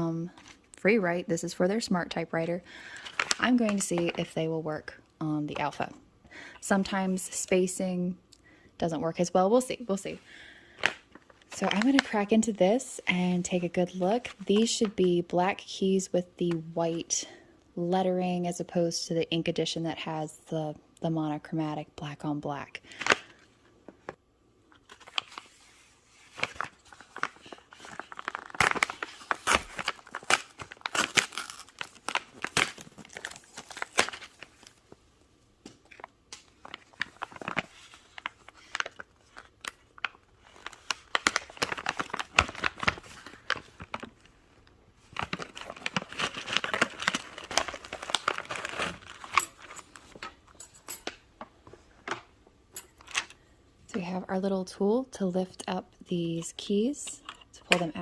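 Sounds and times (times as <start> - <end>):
packaging crinkling and tearing: 2.8 - 4.3, 24.8 - 35.0, 35.8 - 44.4, 45.0 - 50.3.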